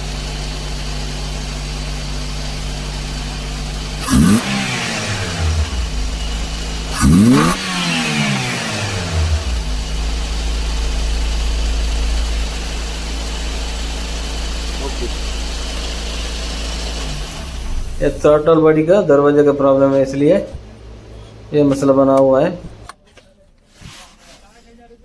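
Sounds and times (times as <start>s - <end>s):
pickup engine idling and revving: 0.0s - 19.0s
man talking: 14.8s - 15.2s, 18.0s - 20.6s, 21.5s - 22.7s.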